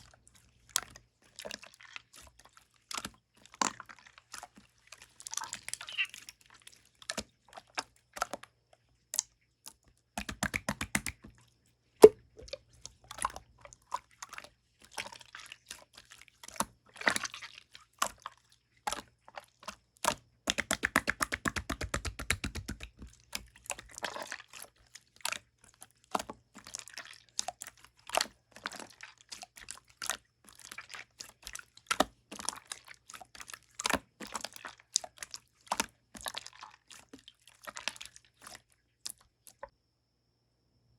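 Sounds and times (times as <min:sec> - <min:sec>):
slime being squeezed: 0:05.4 - 0:06.3, 0:12.0 - 0:12.6
air popping in slime: 0:12.0 - 0:12.6, 0:20.5 - 0:23.0.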